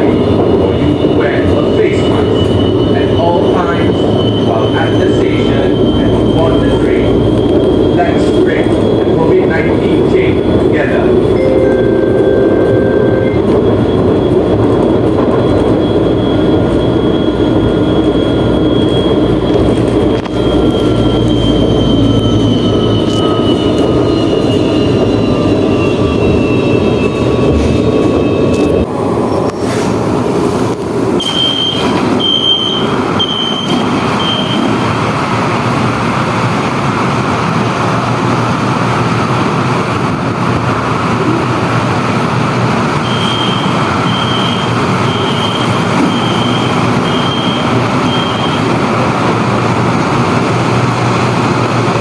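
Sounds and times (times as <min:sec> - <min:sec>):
train rumble: 0:00.0 - 0:52.0
short high beeps: 0:11.4 - 0:13.6.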